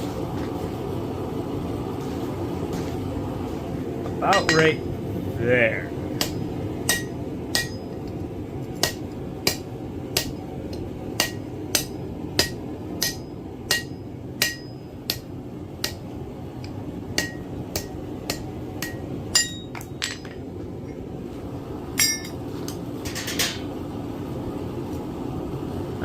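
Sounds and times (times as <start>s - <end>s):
hammer striking iron on anvil: 4.2s - 4.8s, 6.2s - 20.4s, 22.0s - 22.4s.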